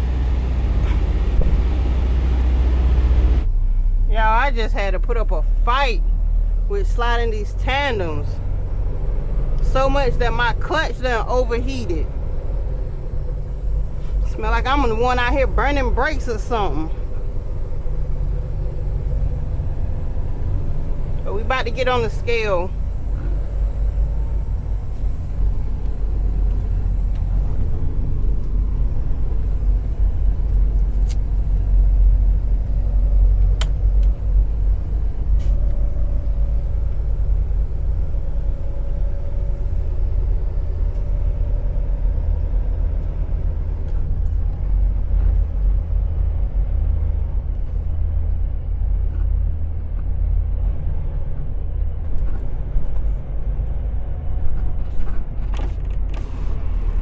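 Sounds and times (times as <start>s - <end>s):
truck diesel engine running: 0.0s - 57.0s.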